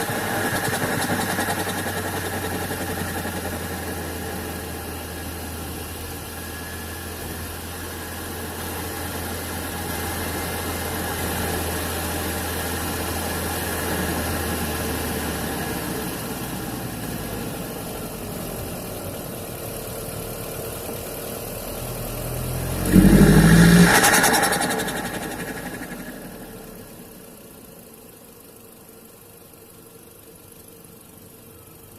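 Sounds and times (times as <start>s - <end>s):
intake rushing: 0.0s - 5.2s, 22.8s - 27.2s
turbo flutter: 0.0s - 5.3s, 23.0s - 27.8s
car engine idling: 0.0s - 31.9s.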